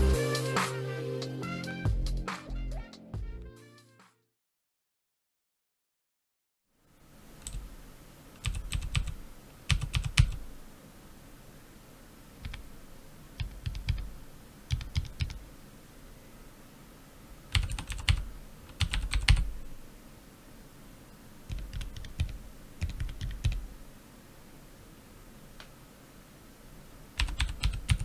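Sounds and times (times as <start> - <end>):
mechanical keyboard typing: 7.4 - 7.7, 8.4 - 10.4, 12.4 - 12.7, 13.4 - 15.4, 17.5 - 19.5, 21.5 - 23.7, 27.2 - 28.0.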